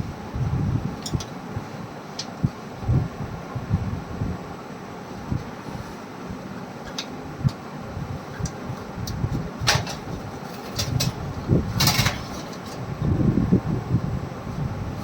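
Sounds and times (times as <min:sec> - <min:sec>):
rattling scrape: 0:09.7 - 0:12.8.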